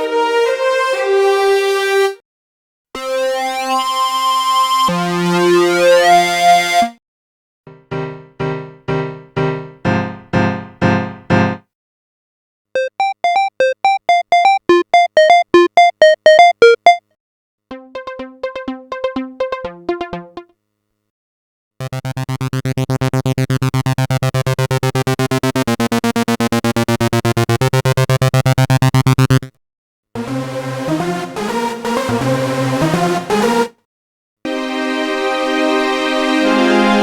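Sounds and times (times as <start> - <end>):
synthesizer chords: 12.8 - 17.0, 17.7 - 20.5, 21.8 - 29.5, 30.2 - 33.7
synthesizer pulsing sequence: 12.8 - 17.0, 17.7 - 20.5, 21.8 - 29.5
synthesizer staccato notes: 12.8 - 17.0, 17.7 - 20.5, 21.8 - 29.5.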